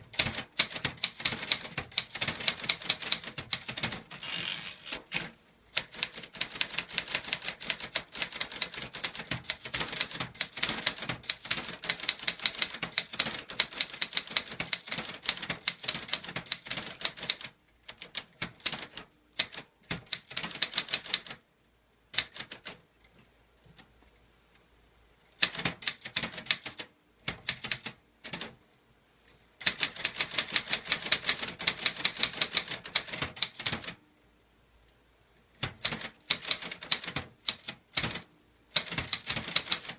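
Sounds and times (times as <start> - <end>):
typewriter keystroke clacks: 0.1 - 4.2, 5.1 - 21.4, 22.1 - 22.8, 25.4 - 28.6, 29.6 - 34.0, 35.6 - 39.9.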